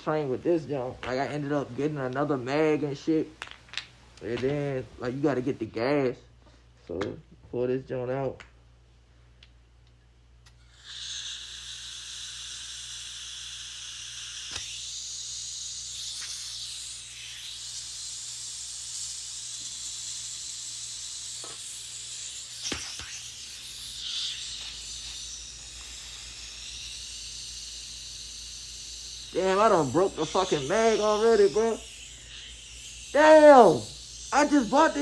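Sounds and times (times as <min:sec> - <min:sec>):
pressurised gas hissing: 0:10.6 - 0:35.0.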